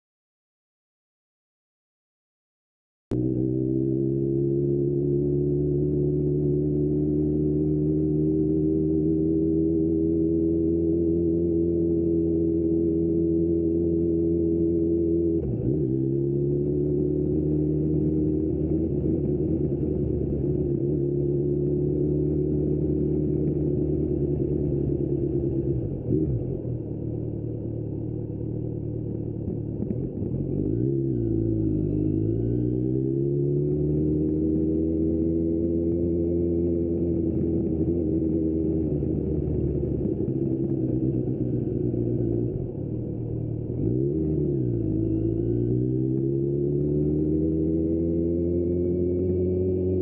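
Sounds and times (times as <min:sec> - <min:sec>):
motorcycle engine running: 0:11.5 - 0:32.4, 0:33.2 - 0:50.0.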